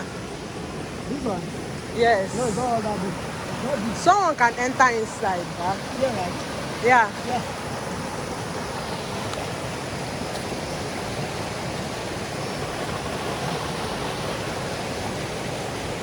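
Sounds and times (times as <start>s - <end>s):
stream water rushing: 0.0s - 16.0s.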